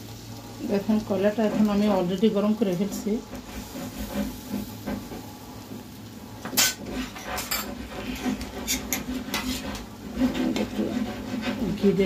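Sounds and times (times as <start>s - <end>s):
metal utensils and dishes clinking: 6.6s - 9.6s.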